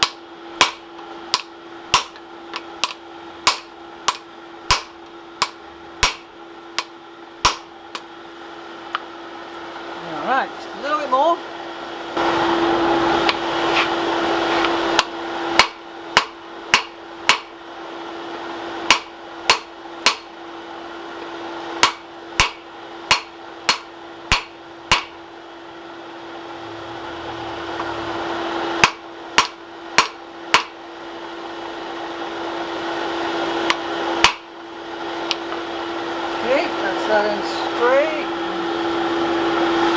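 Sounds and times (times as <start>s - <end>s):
hammer striking steel on anvil: 0.0s - 8.1s, 15.0s - 17.5s, 18.9s - 20.3s, 21.8s - 25.2s, 28.8s - 30.8s
steady hum: 0.0s - 39.9s.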